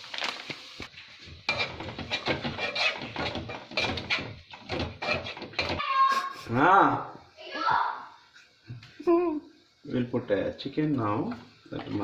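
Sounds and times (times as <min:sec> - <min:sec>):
faint frying sizzle: 0:00.0 - 0:12.0
metal spoon scraping cookware: 0:01.5 - 0:05.8.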